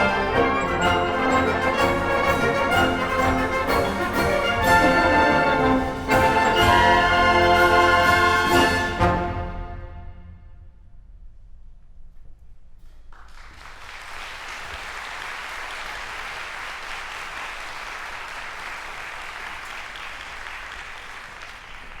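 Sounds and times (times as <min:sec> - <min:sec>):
audience applauding: 0:00.0 - 0:08.7, 0:13.2 - 0:22.0
orchestral music: 0:00.0 - 0:10.6.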